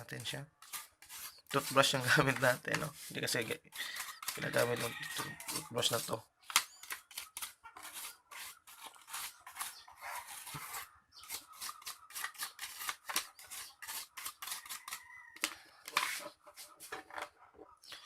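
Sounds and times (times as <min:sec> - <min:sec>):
toothbrush scrubbing laptop: 0:00.6 - 0:06.2, 0:06.8 - 0:15.0.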